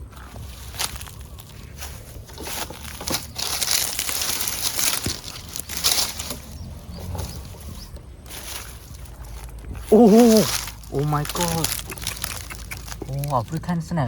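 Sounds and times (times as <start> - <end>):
rustling and crinkling: 0.0 - 14.0
sharp cracks: 9.9 - 13.6.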